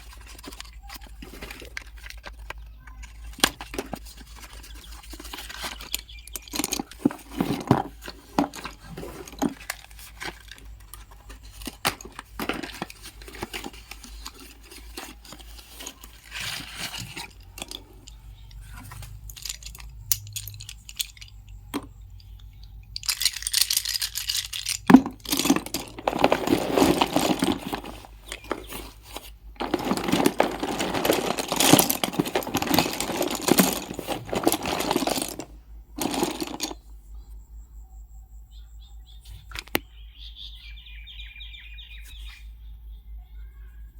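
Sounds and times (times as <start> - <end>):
tearing and crinkling: 0.0 - 20.7, 23.0 - 36.7
pencils clicking and tapping: 0.0 - 36.9, 39.3 - 39.9.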